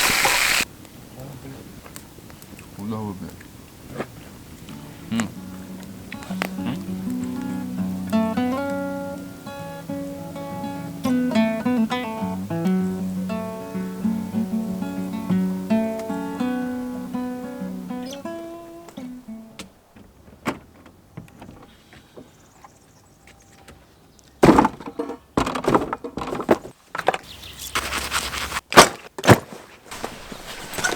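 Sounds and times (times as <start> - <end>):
acoustic guitar plucked notes: 4.7 - 19.7.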